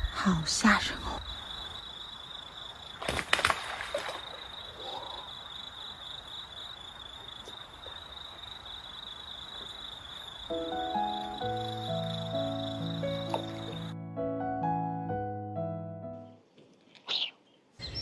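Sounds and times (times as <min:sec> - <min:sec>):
background music: 0:10.5 - 0:16.4.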